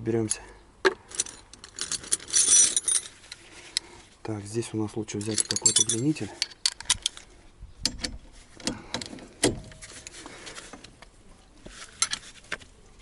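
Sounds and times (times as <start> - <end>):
metal hand tools clinking: 5.1 - 6.8.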